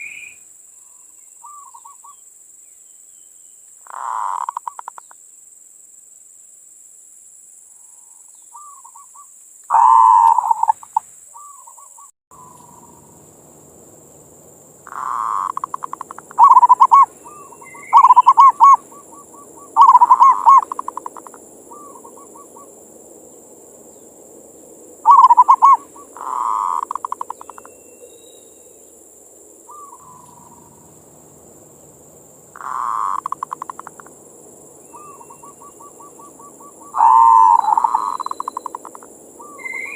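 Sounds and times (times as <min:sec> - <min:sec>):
faint steady hiss: 0:00.0 - 0:39.9
doves cooing: 0:03.8 - 0:05.0, 0:09.7 - 0:13.2, 0:14.8 - 0:23.2, 0:25.0 - 0:27.7, 0:29.6 - 0:31.4, 0:32.5 - 0:34.2, 0:34.8 - 0:39.9.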